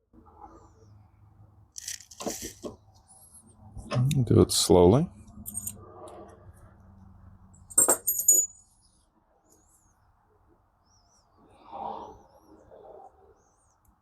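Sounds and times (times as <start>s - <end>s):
metallic clinks: 5.4s - 5.8s, 7.6s - 8.8s.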